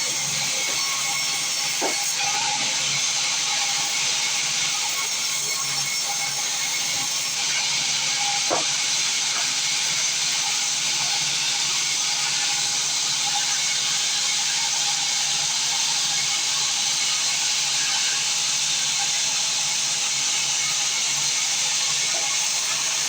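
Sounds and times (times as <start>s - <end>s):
saw cutting through wood: 0.0s - 13.9s, 18.0s - 23.0s.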